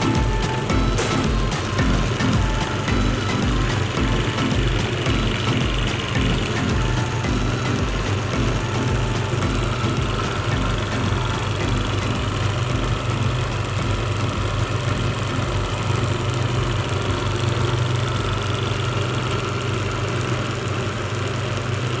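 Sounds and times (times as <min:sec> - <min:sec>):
table fan motor humming: 0:00.0 - 0:22.0.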